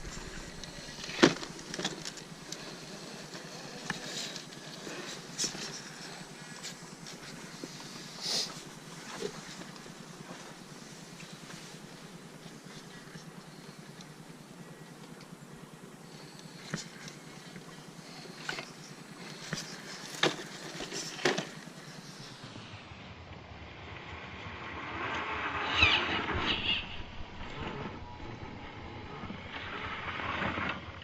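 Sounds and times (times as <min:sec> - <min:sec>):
electric motor whine: 0:00.0 - 0:22.9
wheel noise: 0:00.0 - 0:23.1.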